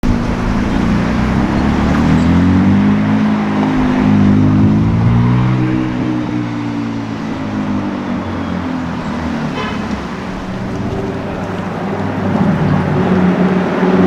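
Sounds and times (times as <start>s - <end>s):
car engine running: 0.0s - 3.2s, 8.6s - 14.0s.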